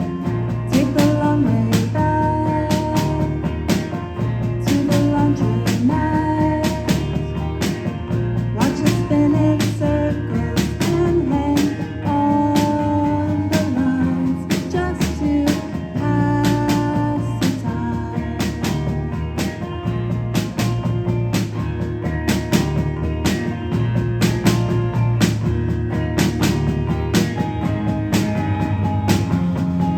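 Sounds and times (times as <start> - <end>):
person singing: 0.0 - 3.7, 4.7 - 7.2, 8.5 - 18.6
live band playing: 0.0 - 29.9.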